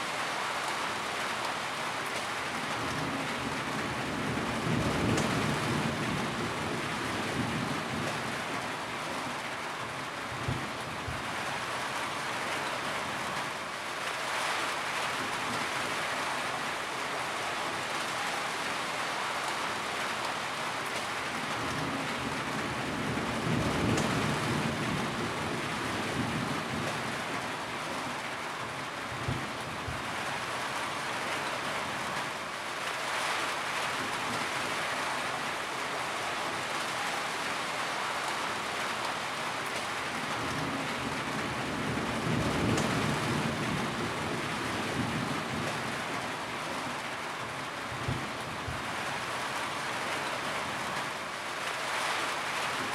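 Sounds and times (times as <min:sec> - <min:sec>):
heavy rain: 0:00.0 - 0:52.9
thunder rumbling: 0:40.4 - 0:46.0.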